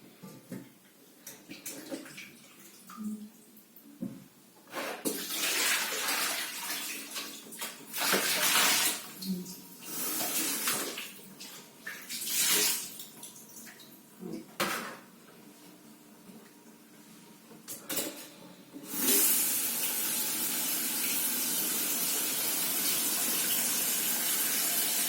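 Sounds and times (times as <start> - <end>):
tap water splashing in sink: 5.1 - 9.1.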